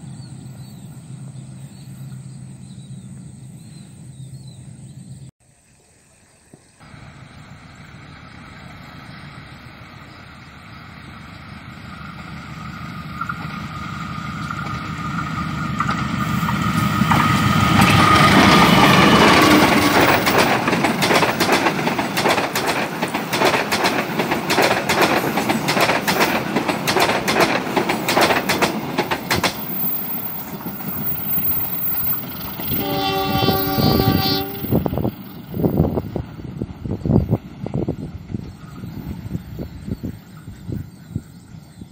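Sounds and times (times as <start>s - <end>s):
train rumble passing: 0.0s - 5.3s, 6.8s - 41.9s
wheels clacking over rail joints: 7.8s - 38.8s
train horn blast: 17.2s - 20.5s, 32.6s - 35.2s.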